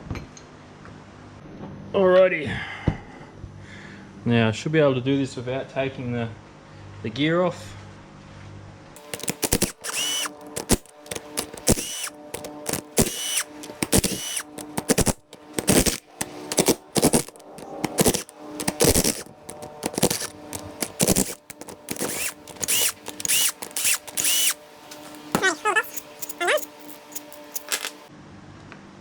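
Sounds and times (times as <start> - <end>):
sharp metal clicks: 9.0 - 28.1
tool mechanical bursts: 9.0 - 28.1.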